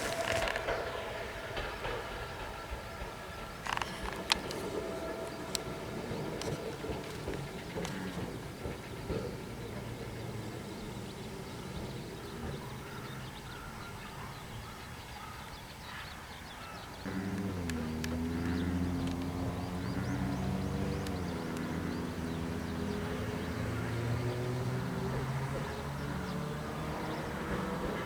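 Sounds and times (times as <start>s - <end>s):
multi-tone hum: 0.0s - 13.0s
train noise: 0.0s - 28.0s.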